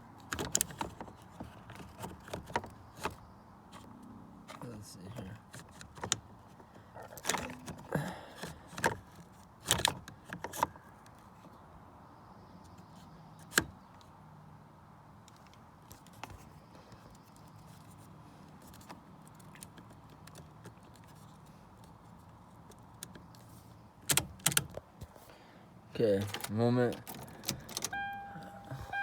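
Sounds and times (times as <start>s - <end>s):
faint low hum: 27.9s - 29.0s.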